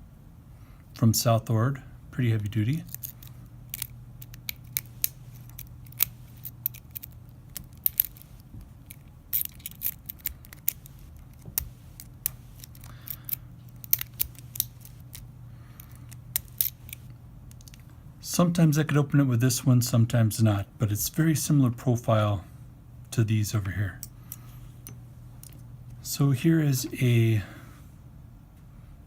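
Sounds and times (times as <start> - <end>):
low steady hum: 0.0 - 29.0
lock pick metal clicks: 2.9 - 8.2, 8.8 - 17.8.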